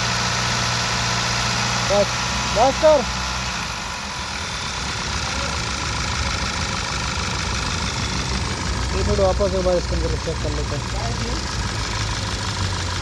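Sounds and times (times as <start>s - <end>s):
petrol engine running steadily: 0.0s - 13.0s.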